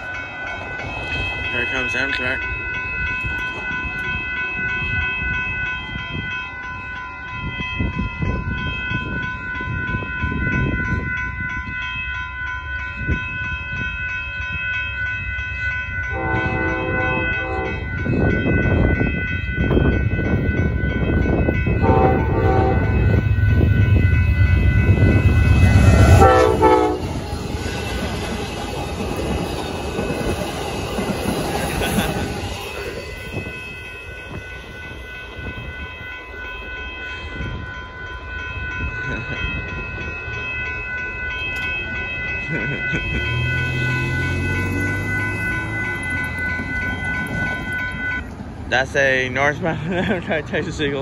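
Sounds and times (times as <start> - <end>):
crossing bell ringing: 0.0 - 51.0
train engine and wheel rumble: 0.0 - 51.0
train horn blasts: 16.1 - 18.0, 21.8 - 24.7, 25.5 - 27.2.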